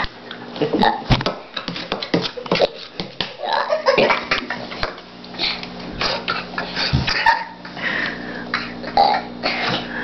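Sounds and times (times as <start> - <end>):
boy burping: 8.5 - 9.8.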